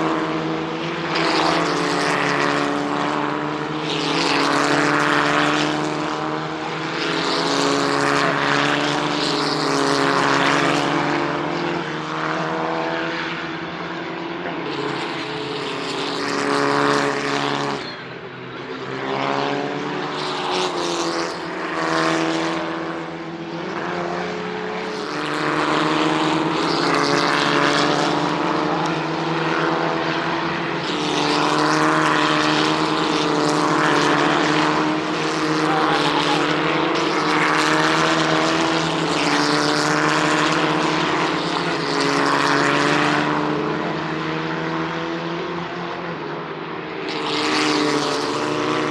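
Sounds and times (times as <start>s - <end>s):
racing car engines passing: 0.0s - 48.9s.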